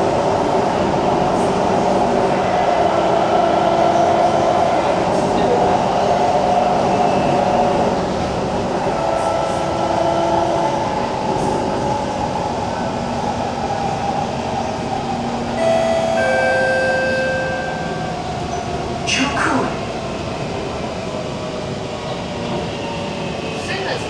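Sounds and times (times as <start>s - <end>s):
train wheel-on-rail rumble: 0.0s - 24.0s
train motor tones shifting pitch: 15.6s - 18.6s.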